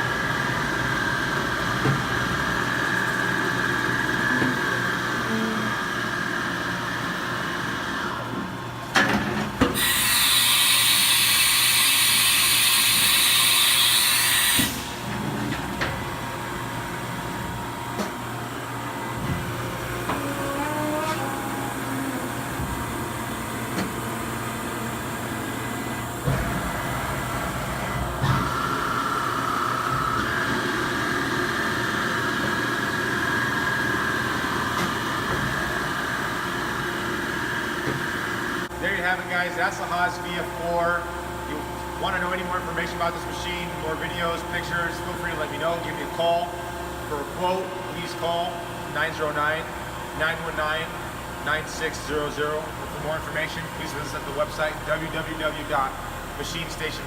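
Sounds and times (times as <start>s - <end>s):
machine hum: 14.8s - 47.9s
spindle whine: 15.8s - 31.2s.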